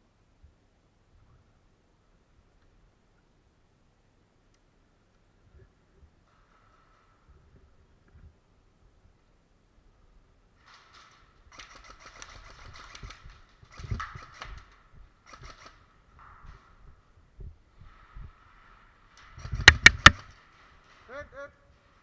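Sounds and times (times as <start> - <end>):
footsteps: 16.1 - 22.0
dull thumps: 19.6 - 20.2.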